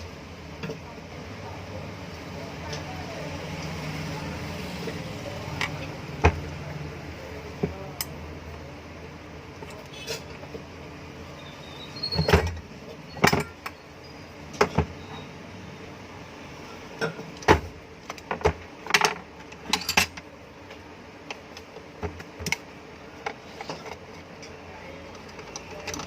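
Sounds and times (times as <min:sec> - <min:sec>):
metal tools clinking: 0:18.9 - 0:20.2.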